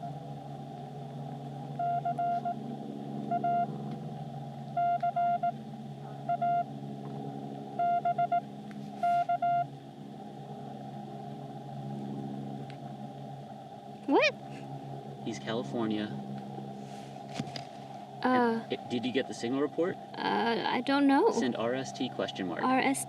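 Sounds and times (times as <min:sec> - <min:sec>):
steady low hum: 0:00.0 - 0:23.0
morse code beeps: 0:01.8 - 0:02.6, 0:03.3 - 0:03.7, 0:04.8 - 0:05.6, 0:06.3 - 0:06.7, 0:07.8 - 0:09.7.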